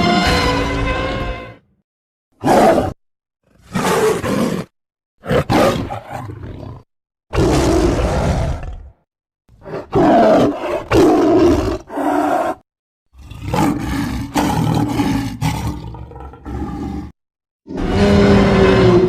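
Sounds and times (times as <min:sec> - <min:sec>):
monster roars: 0:07.4 - 0:09.0, 0:13.2 - 0:19.0.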